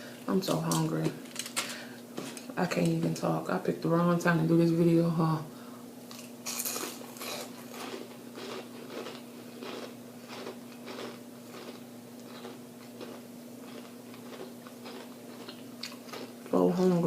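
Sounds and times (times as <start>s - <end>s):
chewing crunchy food: 6.1s - 16.6s.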